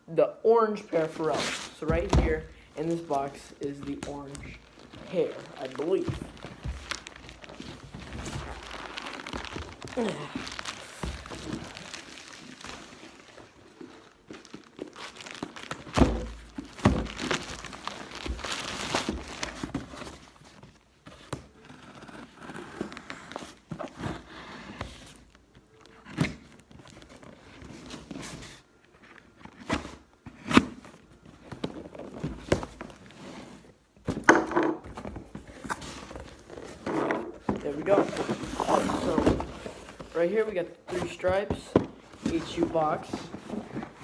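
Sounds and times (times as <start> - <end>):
cardboard knocks and thuds: 1.8 - 2.6, 3.3 - 12.2, 15.2 - 20.3, 34.0 - 40.1
packaging crinkling and tearing: 2.8 - 20.6.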